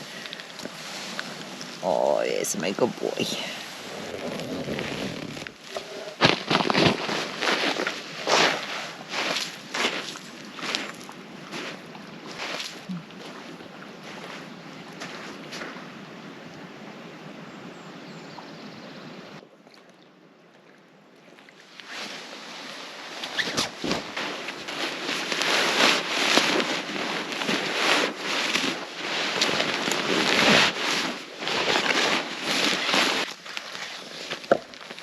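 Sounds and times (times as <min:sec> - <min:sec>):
water washing on a beach: 0:00.0 - 0:19.8, 0:21.5 - 0:35.0
wind on microphone: 0:02.7 - 0:19.4.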